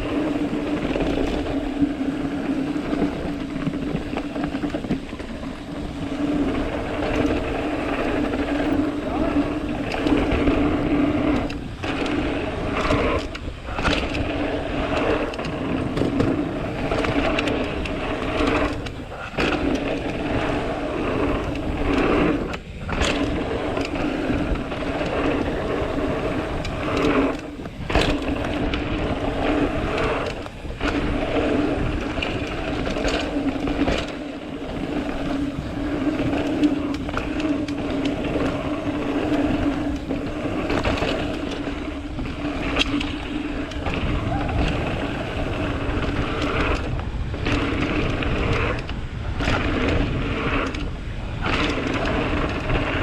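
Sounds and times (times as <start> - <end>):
bike tyres rumbling on dirt: 0.0 - 53.0.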